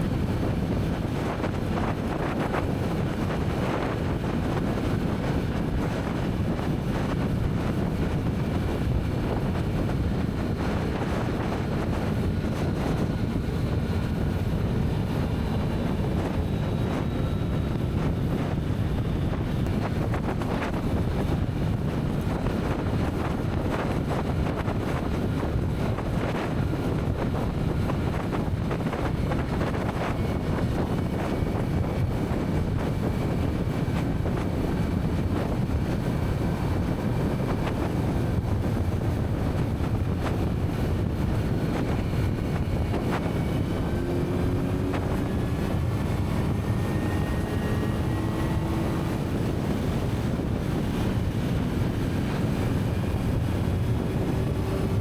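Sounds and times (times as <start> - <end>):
wind rushing over microphone: 0.0 - 55.0
motorcycle engine running: 17.6 - 55.0.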